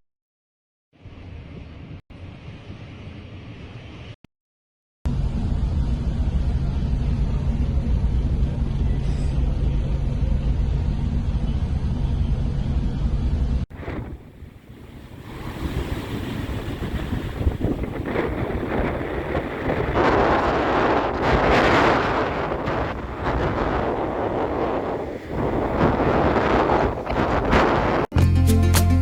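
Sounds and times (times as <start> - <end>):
wind: 1.0 - 4.2, 5.1 - 28.1
ship low rumble: 5.1 - 28.1
sea waves: 13.7 - 28.1.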